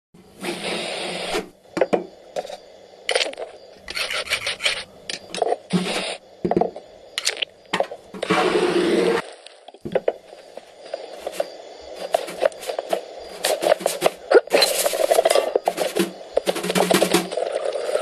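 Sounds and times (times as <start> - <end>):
drum hits and clicks: 15.2 - 17.5.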